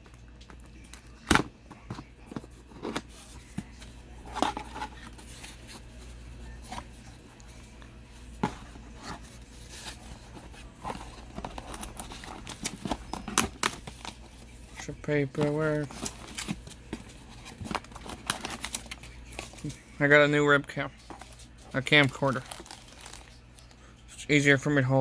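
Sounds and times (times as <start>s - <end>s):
cardboard box being handled: 8.2s - 19.7s.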